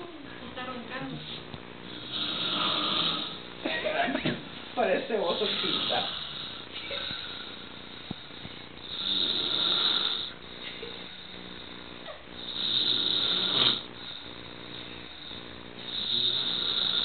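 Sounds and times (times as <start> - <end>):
man snoring: 1.8 - 3.6, 5.4 - 17.0
quiet breathing: 4.6 - 12.8, 13.8 - 16.8.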